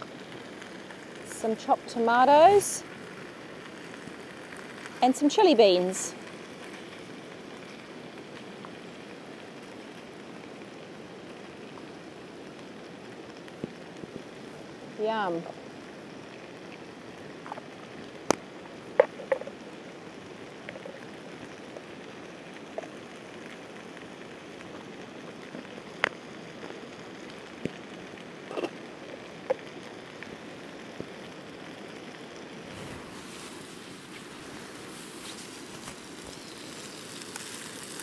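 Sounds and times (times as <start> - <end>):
rain: 0.0 - 38.0
river flowing: 0.0 - 38.0
camp cookware clinking: 28.5 - 28.8.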